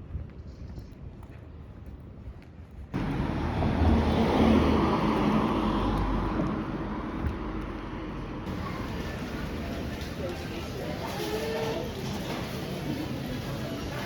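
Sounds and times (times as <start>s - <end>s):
road traffic noise: 2.9s - 14.0s
vehicle passing: 3.0s - 11.0s.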